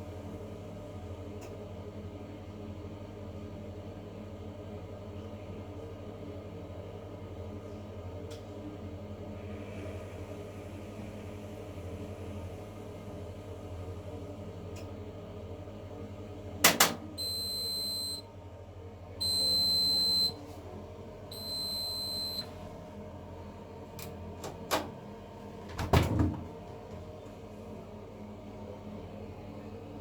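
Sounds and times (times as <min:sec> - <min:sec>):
washing machine beeps: 0:17.1 - 0:18.3, 0:19.2 - 0:20.6, 0:21.3 - 0:22.6
low steady hum: 0:17.2 - 0:24.8.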